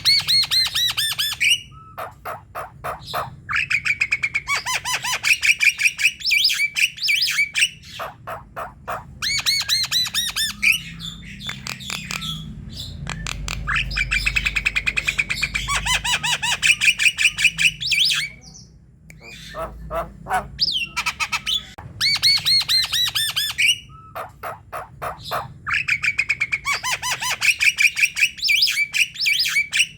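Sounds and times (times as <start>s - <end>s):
myna chattering calls: 19.2s - 23.1s.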